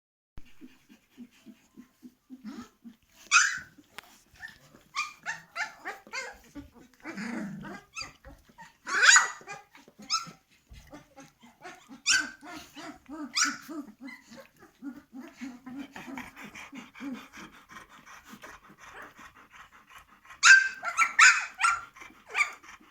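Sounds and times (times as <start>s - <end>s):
puppies whining and yelping: 0.4s - 22.9s.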